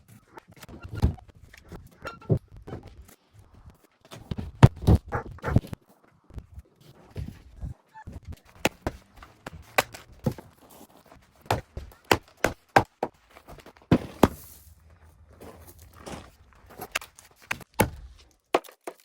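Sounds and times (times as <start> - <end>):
wood clattering: 11.4 - 19.0
firewood knocking together: 16.8 - 19.0.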